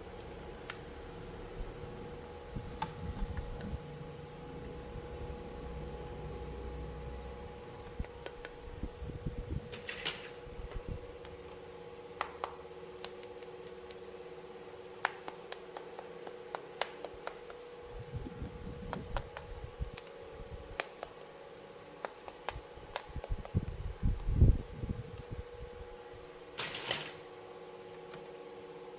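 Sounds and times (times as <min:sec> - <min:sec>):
steady hum: 0:00.0 - 0:28.9.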